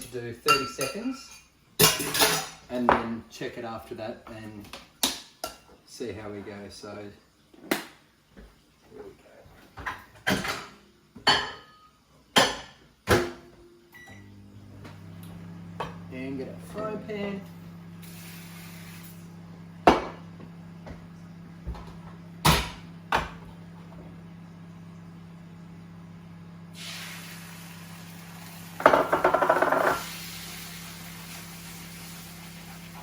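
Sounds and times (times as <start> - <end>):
low electrical hum: 0.0 - 33.0
egg sizzling in hot pan: 18.0 - 19.3, 26.8 - 33.0
frying pan knocking on hob: 28.8 - 30.1.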